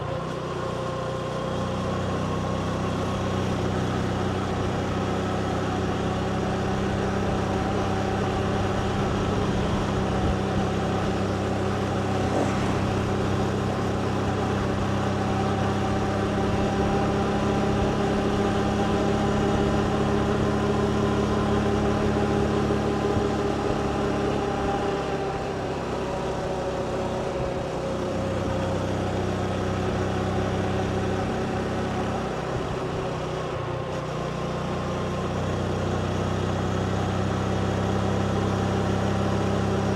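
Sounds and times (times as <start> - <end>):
road and wind noise: 0.0 - 39.9
motorbike engine running: 1.6 - 33.2.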